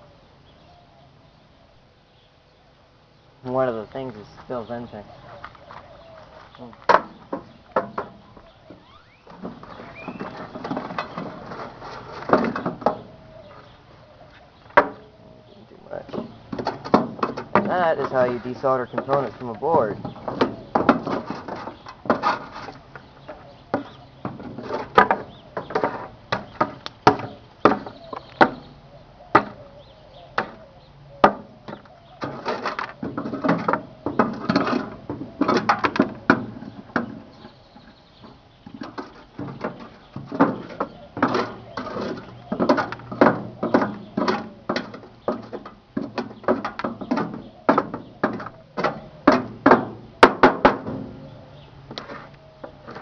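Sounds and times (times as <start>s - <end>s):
sharp knocks and clatter: 6.8s - 13.1s, 16.1s - 28.7s, 31.2s - 51.2s.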